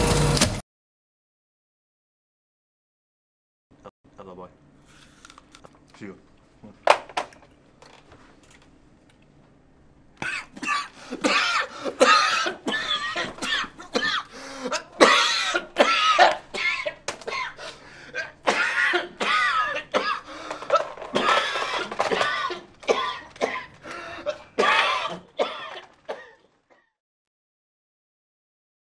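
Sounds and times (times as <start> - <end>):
man clearing throat: 10.2 - 27.0
man coughing: 10.2 - 27.0.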